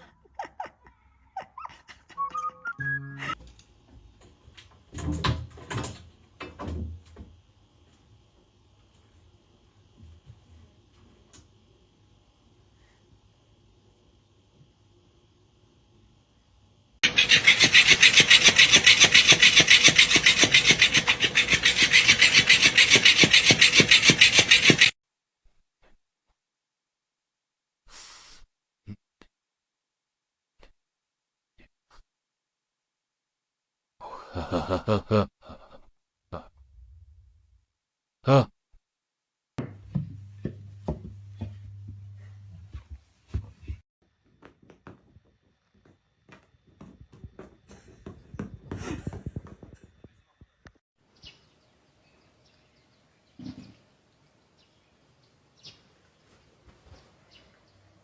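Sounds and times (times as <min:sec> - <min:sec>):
fast rhythmic rasping scratches: 0:17.0 - 0:25.0
steady low hum: 0:39.6 - 0:43.8.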